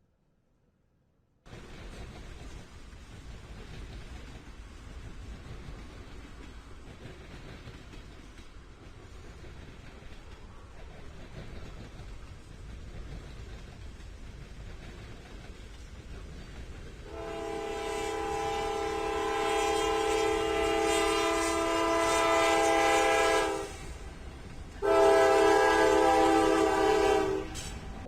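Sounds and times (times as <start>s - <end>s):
train air horn blasts: 17.1s - 24.0s, 24.8s - 27.8s.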